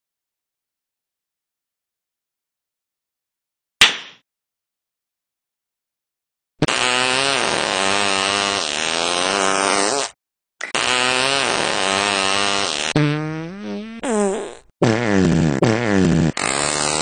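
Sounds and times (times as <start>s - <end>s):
long loud fart noises: 6.6s - 17.0s.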